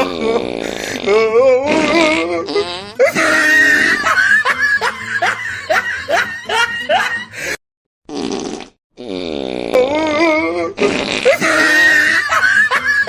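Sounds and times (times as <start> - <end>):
fart sound effects: 0.0 - 4.0, 8.1 - 10.0, 10.8 - 12.1
laughter: 3.0 - 7.4, 11.3 - 13.0.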